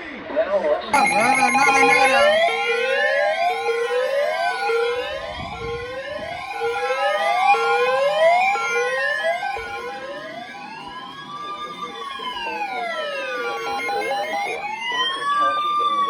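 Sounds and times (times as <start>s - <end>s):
steady alert tone: 1.0s - 2.8s
sirens wailing: 1.0s - 16.0s.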